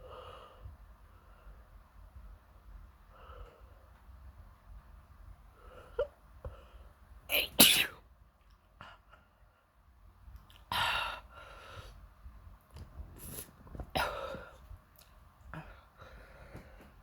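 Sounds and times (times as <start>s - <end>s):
person sneezing: 7.3s - 8.0s
soft breaths and sniffs: 12.8s - 14.9s, 15.5s - 17.0s.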